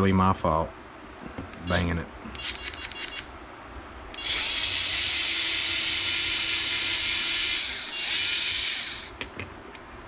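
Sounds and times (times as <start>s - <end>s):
electric screwdriver running: 4.2s - 9.1s.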